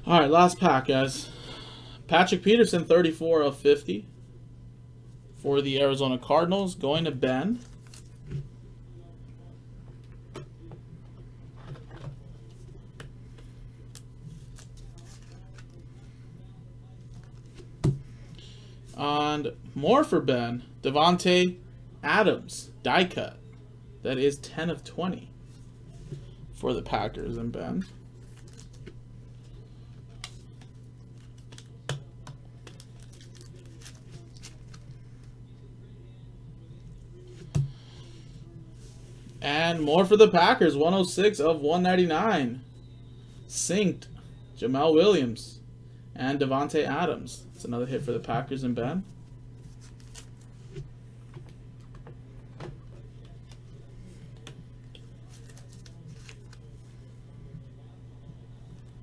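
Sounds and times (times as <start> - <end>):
low electrical hum: 0.0 - 59.0
cards clicking and rustling: 14.0 - 15.8, 28.2 - 29.0, 30.1 - 35.3, 54.3 - 56.9.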